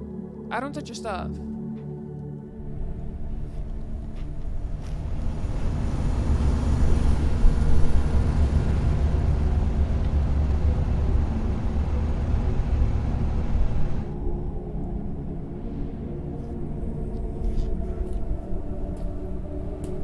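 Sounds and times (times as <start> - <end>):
deep rumbling roar with hiss: 2.7 - 14.1.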